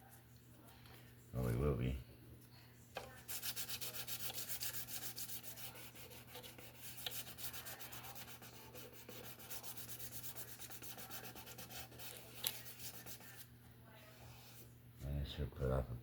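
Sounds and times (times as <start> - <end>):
sanding on wooden bowl: 3.2 - 13.4.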